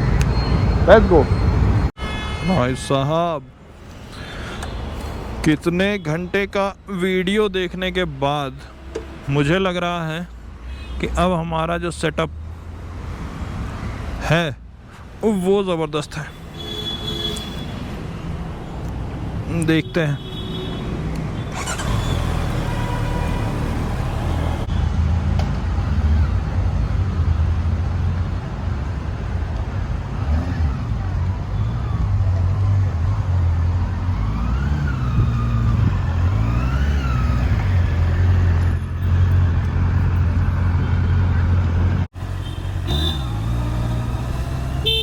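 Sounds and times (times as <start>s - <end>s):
motorcycle engine and wind rumble: 21.5s - 45.0s.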